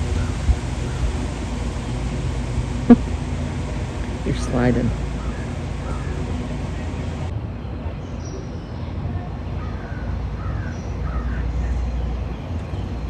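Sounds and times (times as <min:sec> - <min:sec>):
steady low rumble: 0:00.0 - 0:07.3
faint bird calls: 0:04.9 - 0:07.3.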